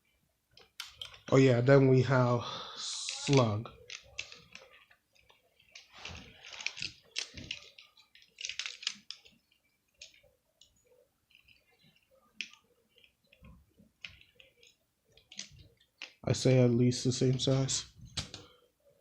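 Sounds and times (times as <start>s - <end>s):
plastic toy figures clicking: 6.5s - 10.7s.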